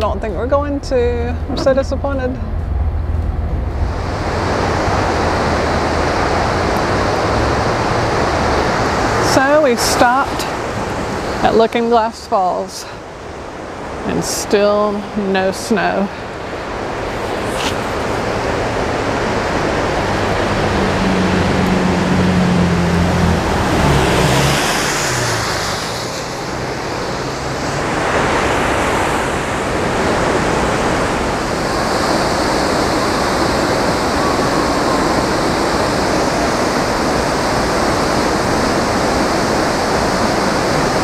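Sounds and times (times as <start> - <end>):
low hum: 0.0 - 12.4
waterfall rushing: 2.2 - 41.0.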